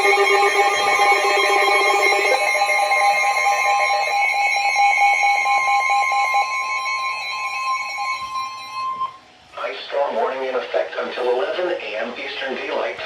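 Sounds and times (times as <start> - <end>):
buzzing pulsing alarm tone: 0.0 - 9.2
steady single-pitch warning tone: 0.0 - 9.3.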